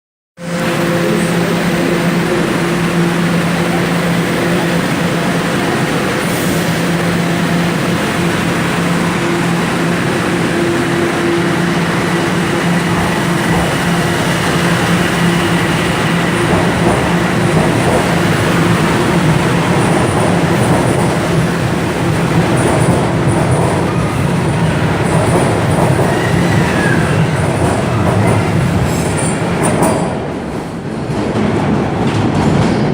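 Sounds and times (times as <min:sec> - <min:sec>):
subway train traction hum: 0:00.4 - 0:32.9
wheels rumbling on rails: 0:00.4 - 0:32.9
high wheel squeals: 0:25.7 - 0:29.4.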